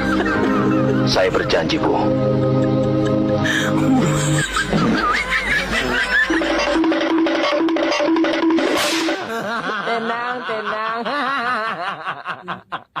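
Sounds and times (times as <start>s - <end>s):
wavering melody: 6.2s - 9.2s.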